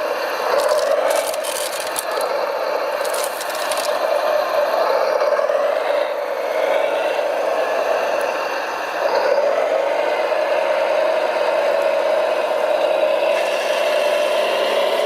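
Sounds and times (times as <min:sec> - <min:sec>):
motor and gear whir: 0:00.0 - 0:10.3
rattling clatter: 0:00.4 - 0:04.1.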